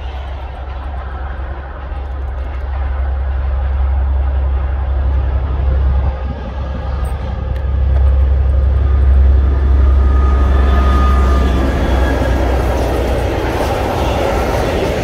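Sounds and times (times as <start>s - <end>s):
train rumbling by: 0.0s - 15.0s
high squeal: 8.8s - 15.0s.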